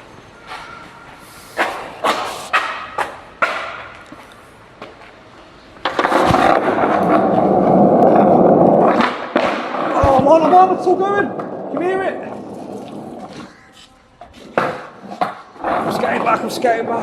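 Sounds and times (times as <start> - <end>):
skateboard wheels rolling: 0.0 - 17.0
skateboard knocks: 5.8 - 13.5.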